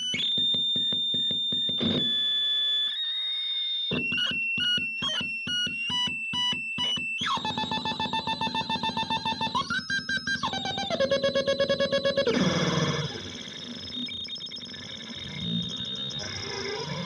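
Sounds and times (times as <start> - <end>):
buzzy electronic tones: 7.3 - 17.0.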